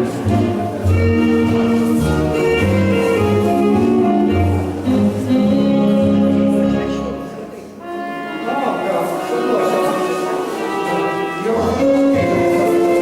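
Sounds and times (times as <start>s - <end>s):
orchestral ballroom music: 0.0s - 13.0s
strings playing sustained chords: 3.0s - 13.0s.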